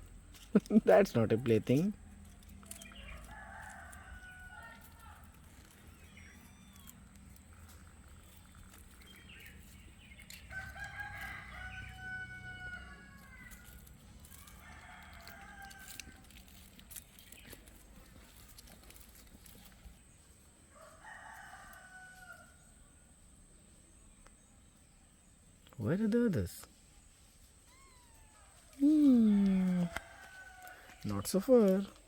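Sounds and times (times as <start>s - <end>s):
rooster crowing: 3.0s - 5.2s, 10.5s - 16.2s, 20.7s - 22.7s, 29.4s - 31.1s.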